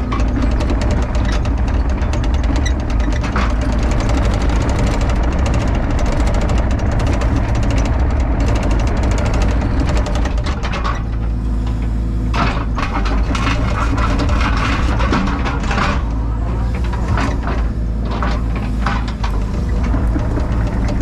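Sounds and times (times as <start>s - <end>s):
excavator diesel engine running: 0.0s - 21.0s.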